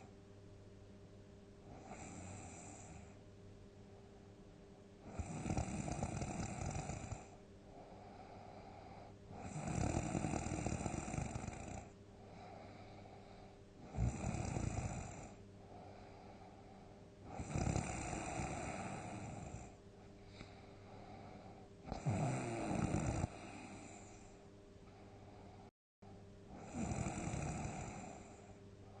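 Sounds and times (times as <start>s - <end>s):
quiet breaths: 0.0s - 29.0s
person snoring loudly: 1.7s - 3.2s, 5.1s - 7.4s, 9.3s - 11.9s, 13.8s - 15.4s, 17.3s - 19.8s, 21.9s - 24.2s, 26.6s - 28.4s.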